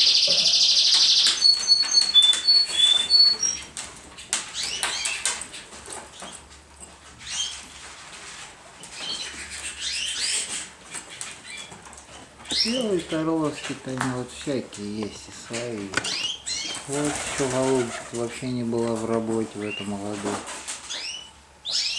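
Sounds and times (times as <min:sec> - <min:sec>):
pigeons chirping: 0:00.0 - 0:21.9
pigeon wings flapping: 0:16.8 - 0:18.3.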